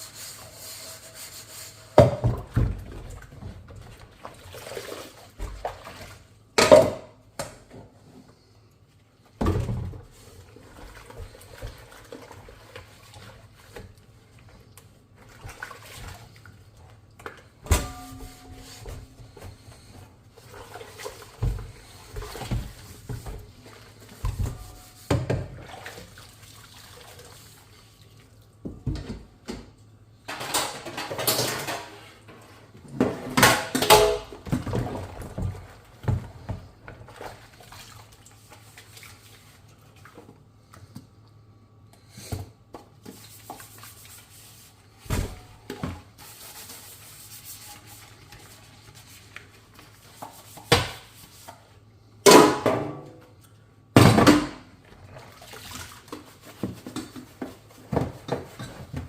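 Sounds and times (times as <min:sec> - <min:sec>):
dishes clinking and clattering: 0:17.7 - 0:19.0, 0:30.3 - 0:32.3.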